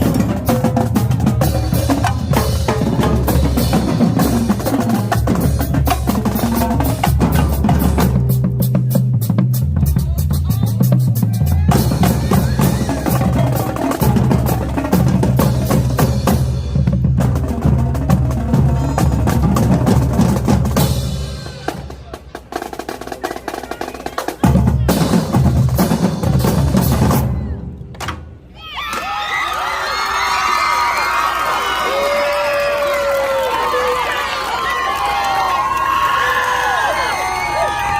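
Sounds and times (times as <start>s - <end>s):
marching drumline cadence: 0.0s - 28.9s.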